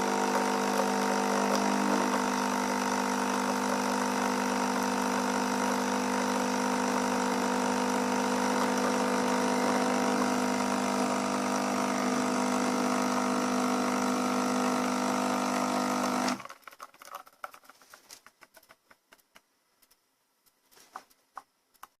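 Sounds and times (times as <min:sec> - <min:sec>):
coffee machine pump running: 0:00.0 - 0:16.5
faint small clicks: 0:17.5 - 0:22.0.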